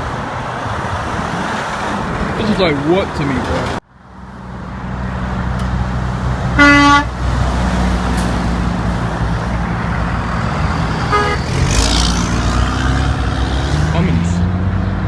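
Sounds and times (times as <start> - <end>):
road and engine noise: 0.0 - 15.0
truck horn blast: 6.5 - 7.3, 10.9 - 11.9
faint horn toot: 6.6 - 7.1, 11.1 - 11.5.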